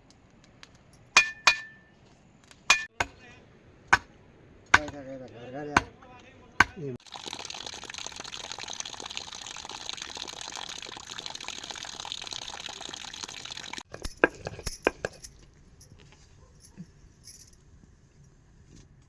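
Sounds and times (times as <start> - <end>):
sharp knocks and clinks: 0.9 - 1.9, 2.7 - 3.2, 13.9 - 17.6.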